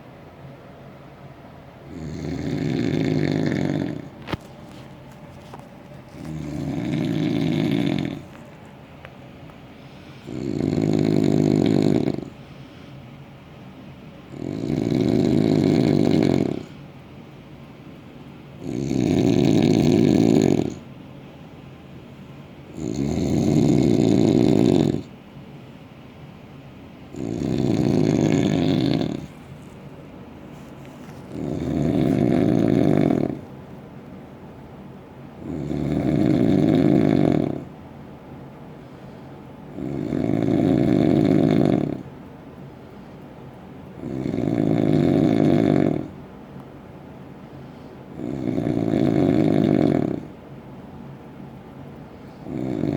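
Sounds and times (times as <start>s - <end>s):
loud snoring: 1.9s - 4.3s, 6.2s - 8.4s, 10.2s - 12.4s, 14.3s - 16.8s, 18.6s - 20.8s, 22.7s - 25.1s, 27.1s - 29.4s, 31.3s - 33.4s, 35.4s - 37.7s, 39.7s - 42.0s, 44.0s - 46.2s, 48.2s - 50.3s, 52.4s - 52.9s.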